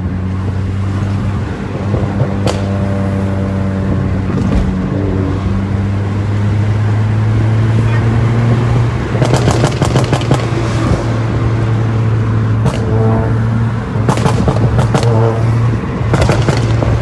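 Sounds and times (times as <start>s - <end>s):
car engine running: 0.0s - 17.0s
exhaust crackling and popping: 0.4s - 5.5s, 9.0s - 11.8s, 12.4s - 17.0s.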